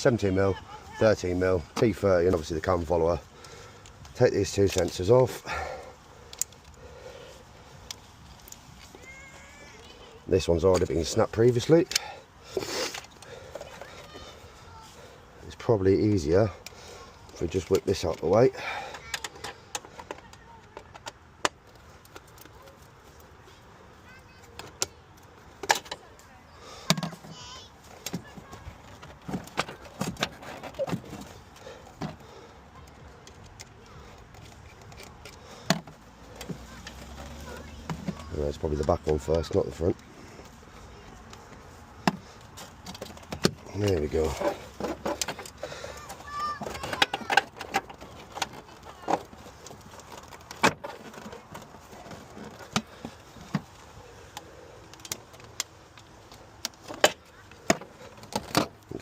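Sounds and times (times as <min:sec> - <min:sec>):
clicks and knocks of hand tools: 0:42.0 - 0:53.7.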